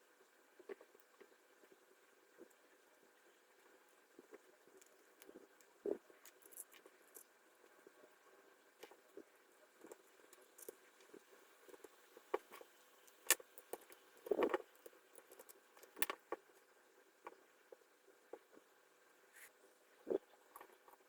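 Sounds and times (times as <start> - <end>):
plastic parts clicking and rattling: 11.7 - 16.4.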